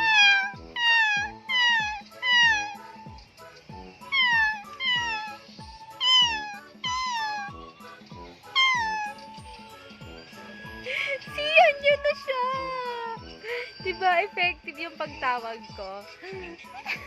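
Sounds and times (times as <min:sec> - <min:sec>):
person imitating kitten mews: 0:00.0 - 0:02.8, 0:06.0 - 0:07.5, 0:08.6 - 0:09.2
background music: 0:00.0 - 0:17.0.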